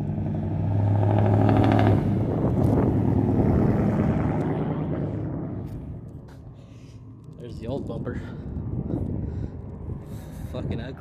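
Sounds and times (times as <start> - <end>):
vehicle driving past: 0.0 - 7.2.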